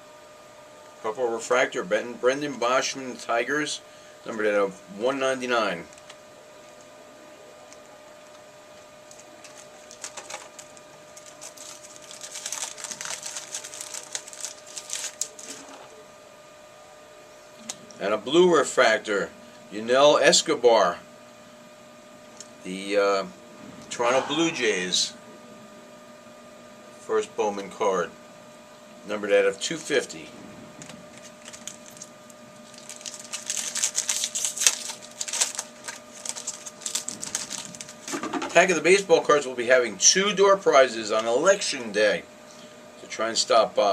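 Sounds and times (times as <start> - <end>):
faint electrical hum: 0.0 - 43.9
cards and packaging crackling: 9.0 - 16.0, 30.7 - 38.7.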